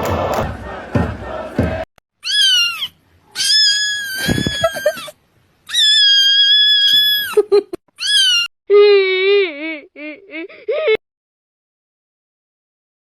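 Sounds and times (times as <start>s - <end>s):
crowd din: 0.0s - 1.9s
cat meowing: 2.2s - 5.1s, 5.7s - 7.3s.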